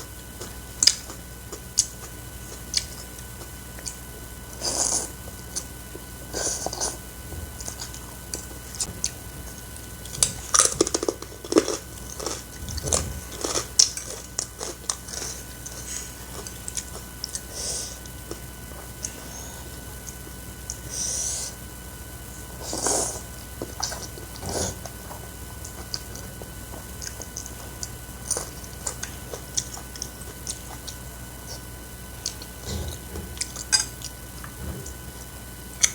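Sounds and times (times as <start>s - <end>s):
biting and chewing: 0.3s - 20.9s, 22.4s - 35.9s
crunching or slurping: 4.5s - 5.7s, 10.1s - 18.4s, 22.4s - 35.9s.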